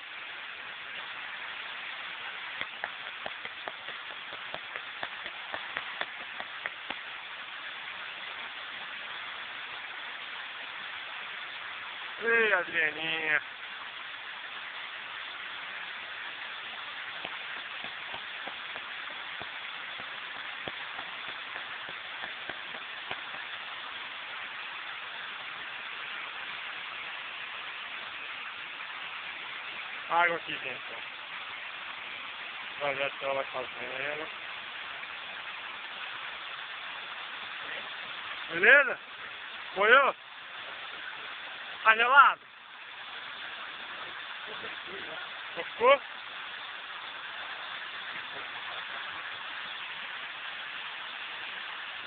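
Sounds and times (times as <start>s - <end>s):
waterfall rushing: 0.0s - 52.0s
sharp irregular ticks: 2.6s - 7.1s.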